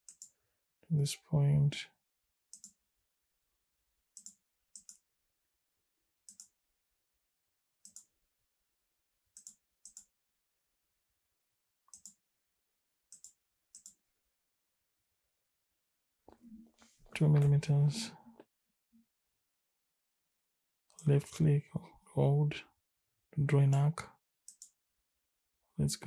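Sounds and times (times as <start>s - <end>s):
computer mouse clicking: 0.0s - 0.4s, 2.5s - 2.8s, 4.1s - 5.0s, 6.2s - 6.6s, 7.8s - 8.1s, 9.3s - 10.1s, 11.9s - 12.2s, 13.1s - 14.0s, 24.5s - 24.8s.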